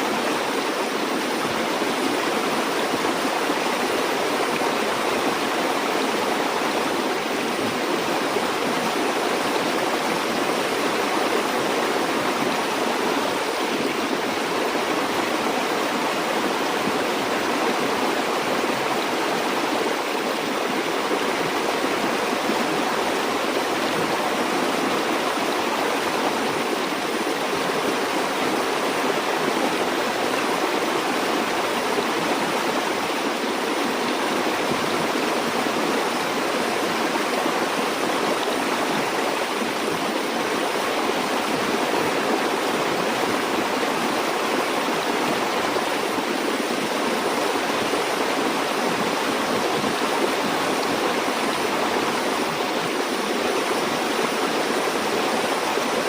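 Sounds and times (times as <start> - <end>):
stream rushing: 0.0 - 56.0.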